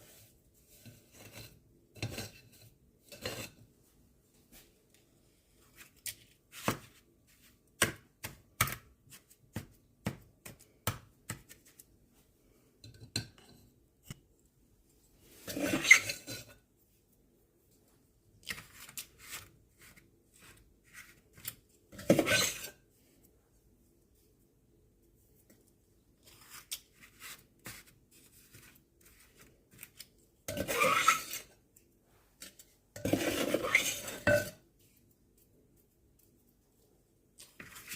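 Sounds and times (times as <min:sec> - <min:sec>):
scoop scraping in a bowl: 0:00.0 - 0:03.6, 0:15.3 - 0:16.6, 0:18.4 - 0:22.8, 0:30.5 - 0:31.5, 0:33.0 - 0:34.5.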